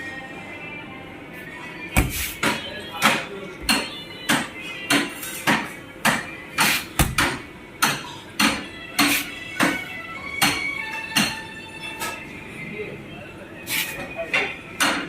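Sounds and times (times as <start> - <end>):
background music with percussive beat: 2.0 - 3.2, 3.8 - 7.5.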